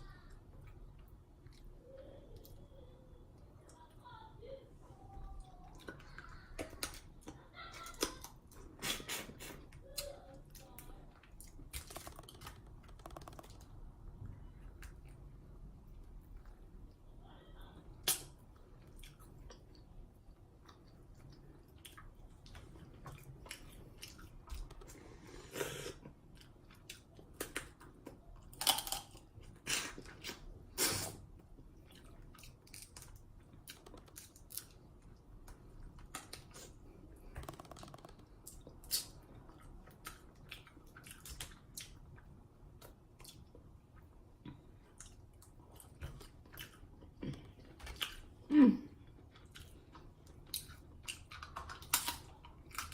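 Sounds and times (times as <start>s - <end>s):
chewing and lip smacking: 18.0s - 25.0s, 25.7s - 48.4s, 49.0s - 52.9s.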